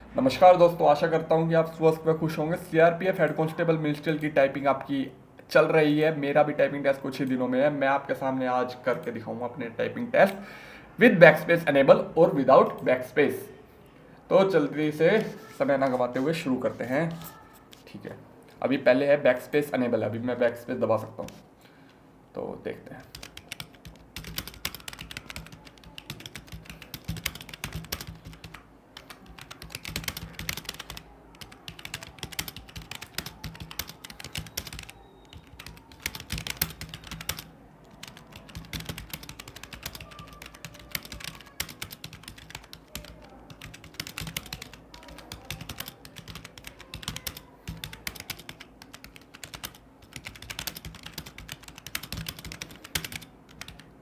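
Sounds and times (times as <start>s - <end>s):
fast typing on keyboard: 15.2s - 16.2s, 21.2s - 21.4s, 23.0s - 54.0s.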